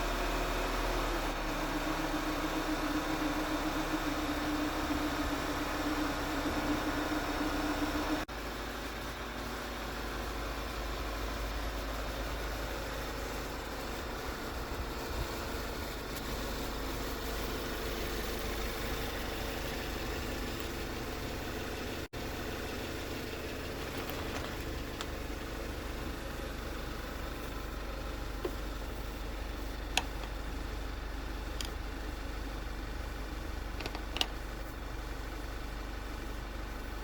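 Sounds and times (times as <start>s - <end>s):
car engine idling: 0.0s - 37.0s.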